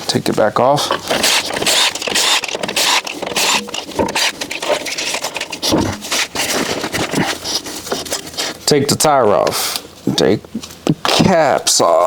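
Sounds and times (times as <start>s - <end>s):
clattering and scraping of metal: 0.9s - 8.4s.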